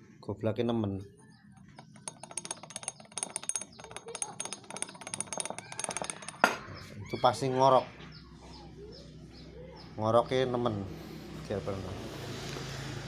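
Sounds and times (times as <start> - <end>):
metallic clicking and rattling: 1.6 - 6.9.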